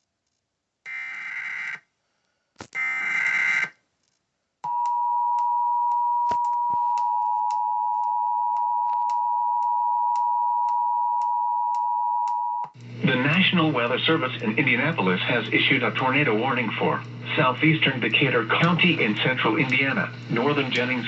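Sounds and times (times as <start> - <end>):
clicks: 8.9 - 16.2
steady attention tone: 10.1 - 21.0
raspy digital data bursts: 17.2 - 21.0.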